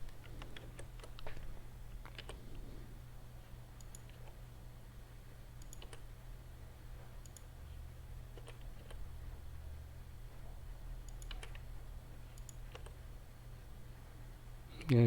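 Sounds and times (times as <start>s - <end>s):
steady low hum: 0.0s - 15.0s
mouse and keyboard clicks: 0.1s - 2.4s, 3.8s - 4.4s, 5.6s - 6.0s, 11.0s - 11.7s, 12.4s - 13.0s.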